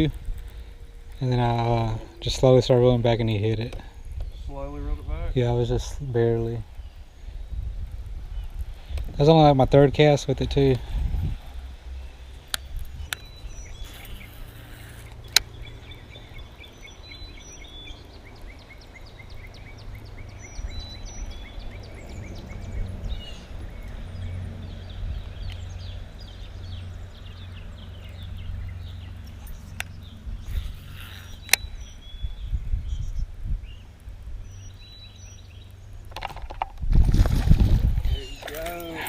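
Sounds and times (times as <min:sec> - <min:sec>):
birds chirping in trills: 0:00.0 - 0:36.6, 0:37.4 - 0:39.0
sharp clicks: 0:31.3 - 0:31.8.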